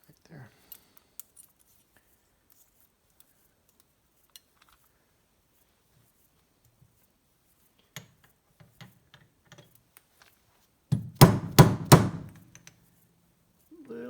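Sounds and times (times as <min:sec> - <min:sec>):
hammer strikes on metal: 0:11.2 - 0:12.4.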